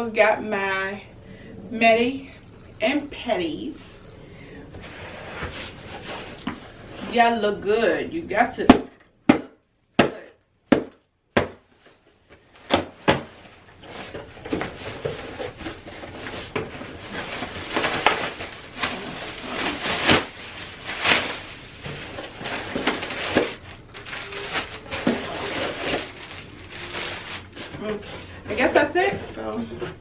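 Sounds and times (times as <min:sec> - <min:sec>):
packaging crinkling and rustling: 0:12.0 - 0:29.0.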